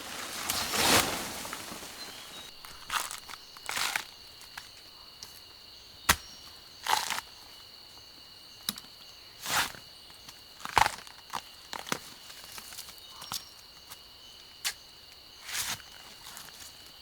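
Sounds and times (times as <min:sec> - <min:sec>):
short rustling noises: 0:00.0 - 0:03.1
insects whining: 0:00.0 - 0:17.0.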